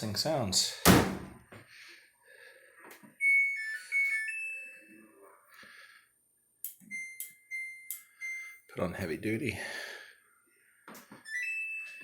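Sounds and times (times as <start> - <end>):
electronic beep chime: 3.2 - 5.0, 6.8 - 8.7, 11.2 - 12.0.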